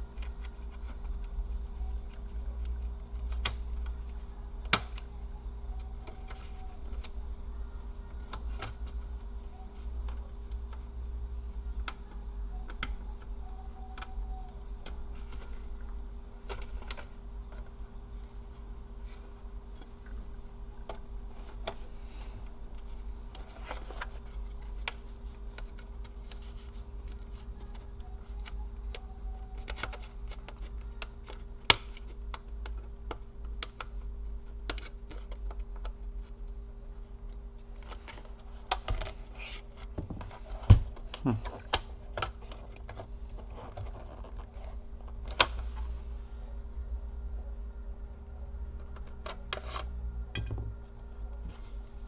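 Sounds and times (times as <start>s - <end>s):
steady low hum: 0.0s - 52.0s.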